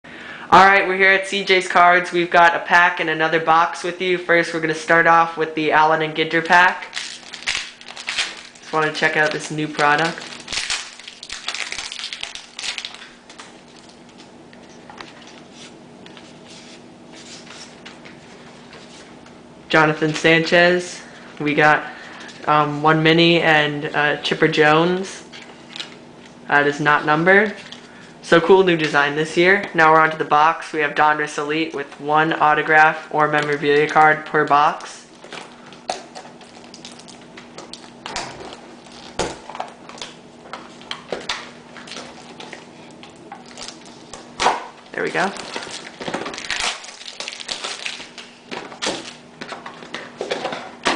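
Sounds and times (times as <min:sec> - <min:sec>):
faint electrical hum: 0:00.1 - 0:50.9
trading cards rustling: 0:06.3 - 0:21.3
cardboard and packaging crinkling: 0:06.6 - 0:19.2, 0:33.5 - 0:50.9.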